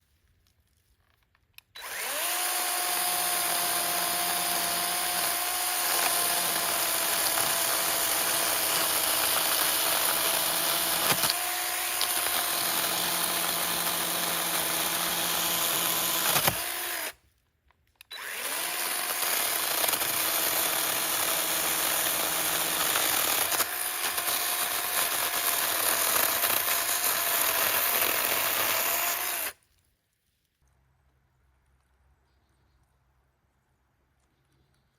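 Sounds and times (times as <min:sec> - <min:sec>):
chainsaw cutting wood: 0:01.8 - 0:17.2, 0:18.1 - 0:29.6.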